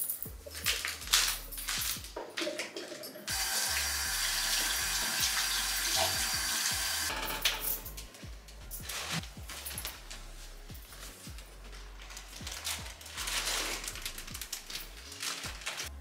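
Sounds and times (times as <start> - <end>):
tap water running into sink: 2.2 - 7.1.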